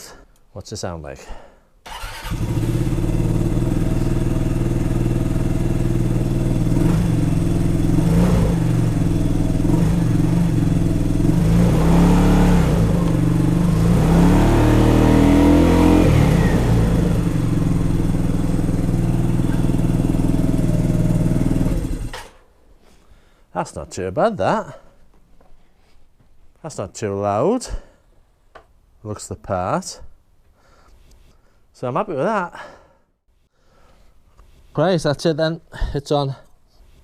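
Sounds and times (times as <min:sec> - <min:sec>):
scooter engine idling and revving: 0:01.9 - 0:22.3.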